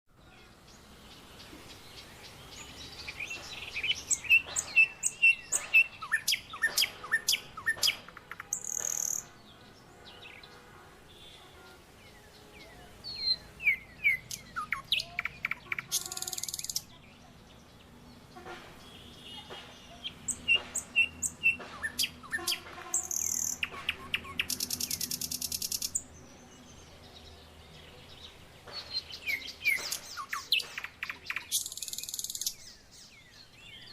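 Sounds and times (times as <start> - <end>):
birds chirping: 0.1 - 33.9
buzzy high-pitched bird trills: 15.4 - 16.8, 21.0 - 26.0.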